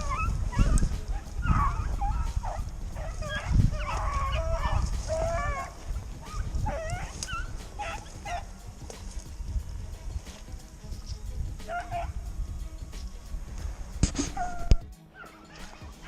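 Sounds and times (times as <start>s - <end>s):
dogs baying: 0.0s - 9.3s, 11.0s - 12.2s, 14.1s - 16.0s.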